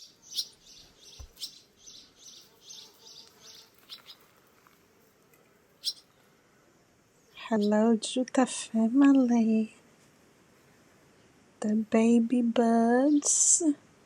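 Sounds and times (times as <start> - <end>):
small birds chirping: 0.0 - 8.5.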